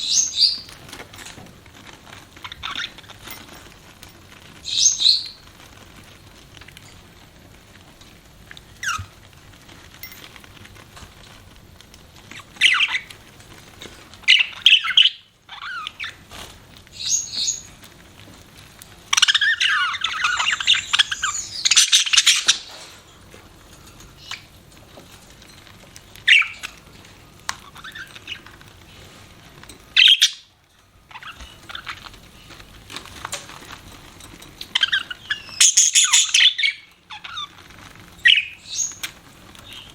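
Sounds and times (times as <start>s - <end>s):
budgerigars chirping: 0.0s - 0.7s, 2.4s - 3.0s, 4.7s - 5.4s, 12.6s - 13.1s, 14.2s - 16.2s, 17.0s - 17.7s, 19.1s - 22.9s, 26.2s - 26.8s, 30.0s - 30.5s, 34.7s - 37.5s, 38.2s - 39.1s
budgerigars chattering warble: 14.3s - 16.2s, 19.2s - 22.8s, 30.0s - 30.5s, 34.8s - 37.5s.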